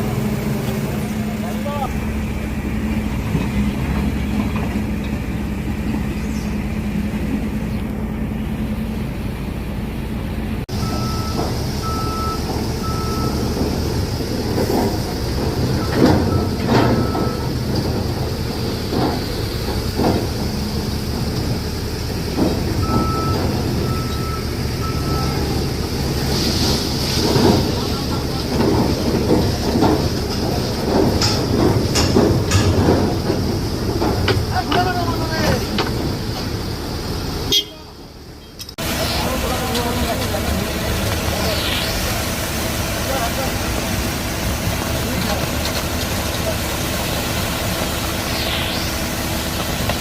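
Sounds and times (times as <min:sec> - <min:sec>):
heavy machinery engine running: 0:00.0 - 0:50.0
reversing alarm beeps: 0:10.8 - 0:13.5, 0:15.8 - 0:17.6, 0:22.8 - 0:25.6.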